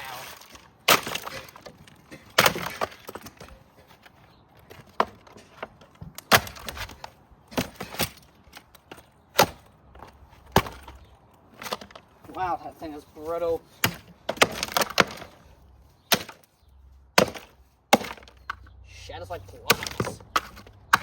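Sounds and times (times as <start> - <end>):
plastic housing struck and shattering: 0.1 - 3.6, 4.6 - 9.7, 13.8 - 15.4, 19.7 - 21.0.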